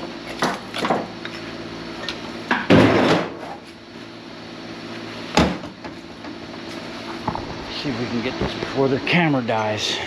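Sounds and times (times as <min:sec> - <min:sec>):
hydraulic press humming: 0:06.7 - 0:10.0.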